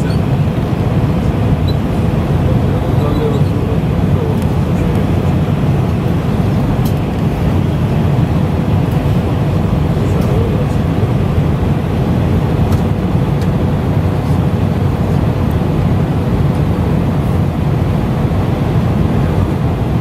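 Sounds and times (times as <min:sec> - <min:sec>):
jet engine and airflow rumble: 0:00.0 - 0:20.0.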